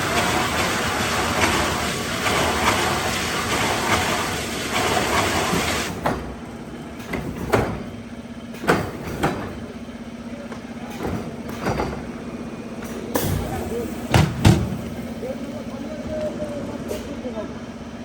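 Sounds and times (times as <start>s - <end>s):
knocks: 13.2s - 15.0s.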